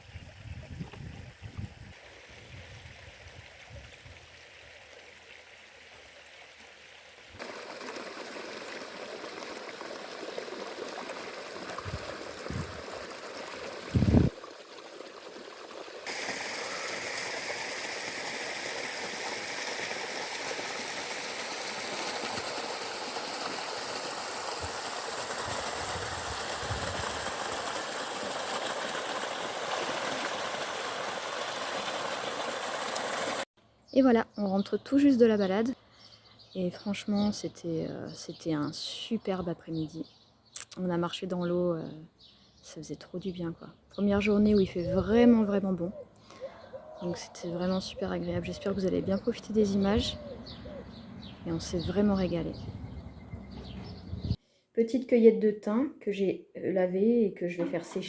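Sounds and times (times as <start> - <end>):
stream water trickling: 0.0 - 33.5.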